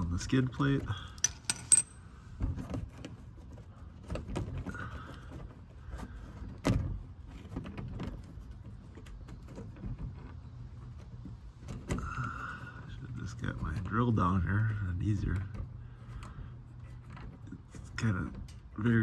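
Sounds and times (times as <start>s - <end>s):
tools knocking and clinking: 1.2s - 2.1s.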